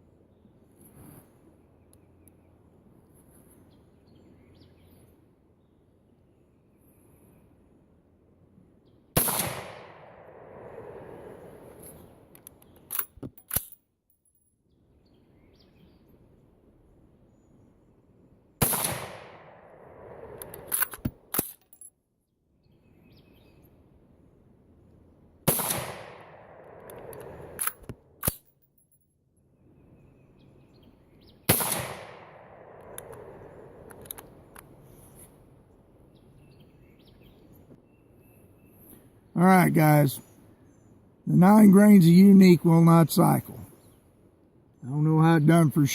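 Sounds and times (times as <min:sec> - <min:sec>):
rifle shots echoing: 0:09.2 - 0:11.6, 0:18.6 - 0:20.8, 0:25.4 - 0:27.7, 0:31.5 - 0:33.9
rifle action metallic clicks: 0:12.3 - 0:13.8, 0:20.3 - 0:21.9, 0:26.6 - 0:28.5, 0:32.7 - 0:34.7.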